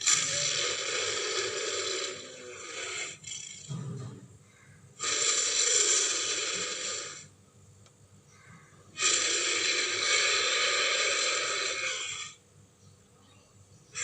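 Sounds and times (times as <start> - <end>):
big cat hissing exhalations: 0.0 - 3.6, 5.0 - 7.3, 9.0 - 12.4.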